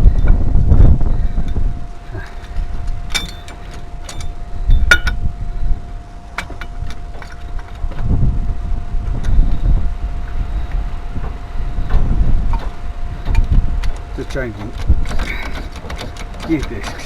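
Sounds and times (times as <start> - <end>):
faint steady tone: 0.0 - 17.0
wind rumbling on microphone: 0.0 - 17.0
metal tools clinking: 1.5 - 5.3, 6.3 - 8.0, 12.6 - 17.0.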